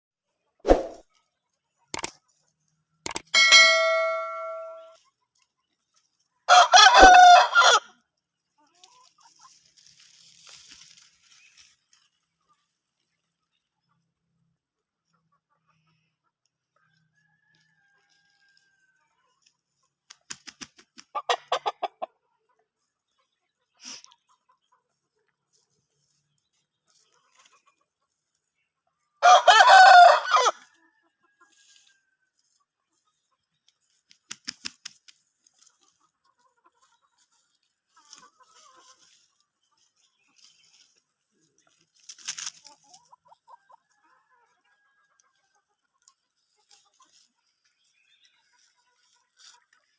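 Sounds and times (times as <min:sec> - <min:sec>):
rooster crowing: 0:06.5 - 0:07.8, 0:29.2 - 0:30.6.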